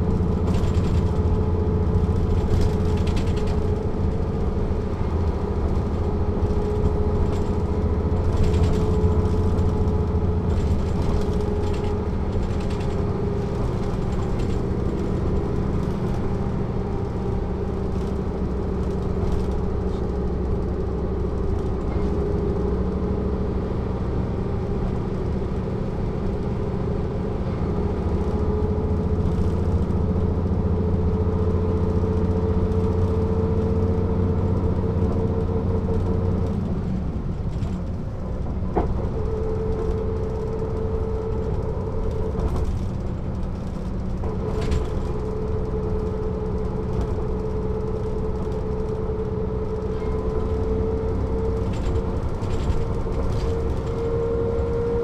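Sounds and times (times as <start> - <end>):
bus diesel engine running: 0.0 - 55.0.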